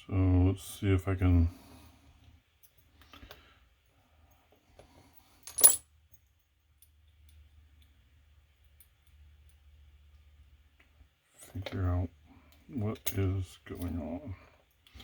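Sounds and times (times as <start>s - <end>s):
ringing metal clink: 5.5s - 5.8s.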